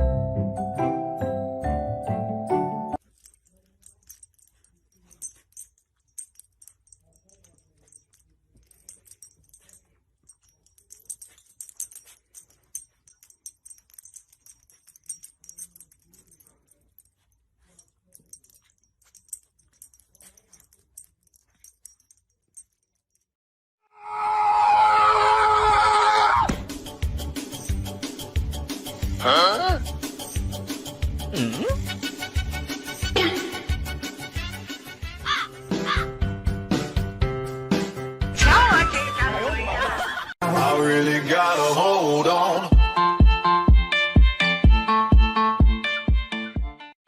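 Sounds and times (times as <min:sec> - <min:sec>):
dog collar tags jingling: 0:03.0 - 0:23.3, 0:26.8 - 0:36.0.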